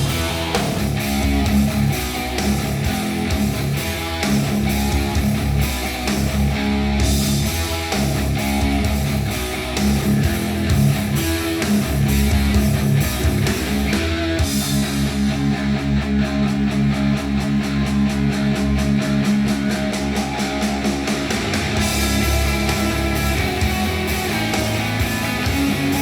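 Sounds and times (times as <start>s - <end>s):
instrumental rock music: 0.0s - 26.0s.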